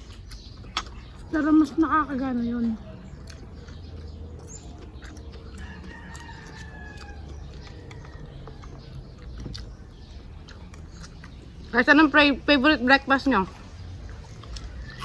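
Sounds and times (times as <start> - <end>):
rooster crowing: 5.6 - 8.8.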